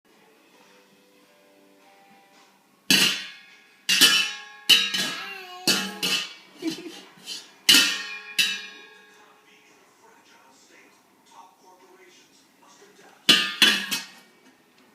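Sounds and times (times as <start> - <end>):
baby banging on musical instrument: 2.9 - 6.4, 7.7 - 8.9.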